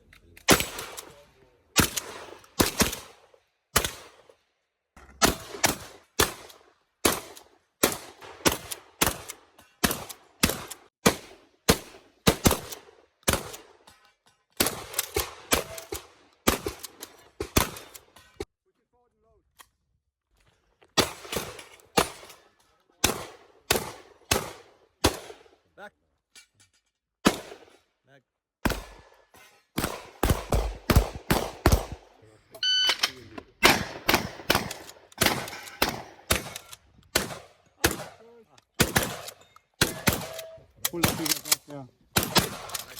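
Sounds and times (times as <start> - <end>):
shotgun shots echoing: 0.5 - 1.2, 1.8 - 4.3, 5.2 - 13.7, 14.6 - 18.1, 21.0 - 22.4, 23.0 - 25.5, 27.2 - 27.8, 28.6 - 29.2, 29.8 - 32.2, 33.0 - 42.9
short electronic beep: 32.6 - 33.2.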